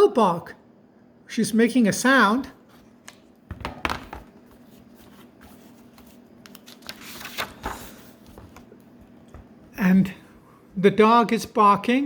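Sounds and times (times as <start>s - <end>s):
paper rustling: 4.2s - 9.3s.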